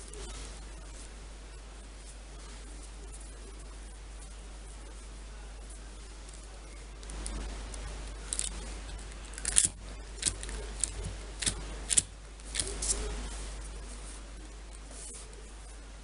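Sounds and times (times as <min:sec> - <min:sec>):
plastic toy tools clicking: 0:09.4 - 0:12.7.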